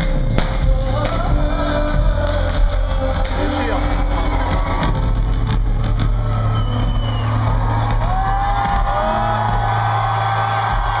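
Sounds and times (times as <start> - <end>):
crowd noise: 0.0 - 11.0
audience whooping: 3.6 - 11.0.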